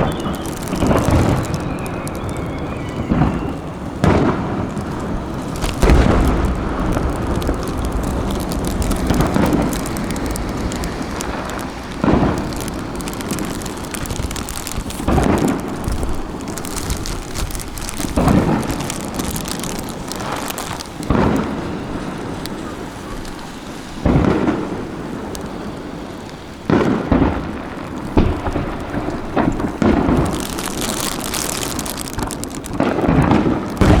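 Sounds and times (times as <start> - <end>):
steady rushing noise: 0.0 - 22.6
firework shells booming: 0.0 - 23.2, 24.0 - 25.9, 26.7 - 34.0.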